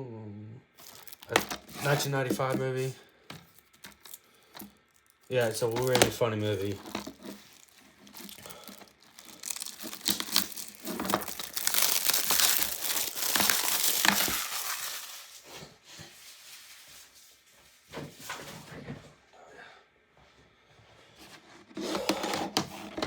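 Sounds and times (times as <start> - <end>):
plastic shrink wrap crinkling: 0.8 - 15.5, 16.1 - 17.5.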